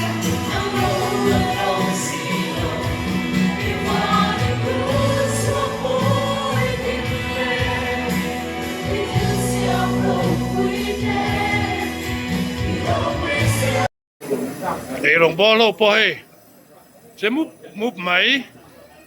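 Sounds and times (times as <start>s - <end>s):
choir singing with accompaniment: 0.0s - 13.9s.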